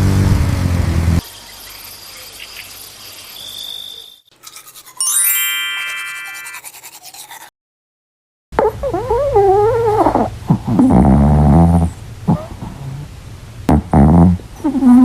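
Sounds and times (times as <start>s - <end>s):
dog moaning: 8.6s - 13.0s.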